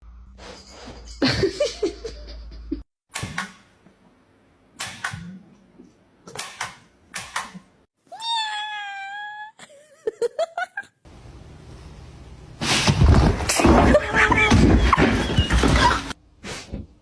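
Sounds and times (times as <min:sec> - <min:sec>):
cat meowing: 0:08.1 - 0:09.5.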